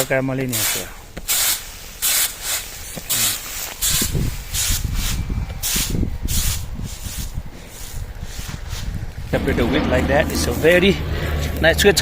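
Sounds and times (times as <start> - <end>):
low rumble: 4.0 - 12.0.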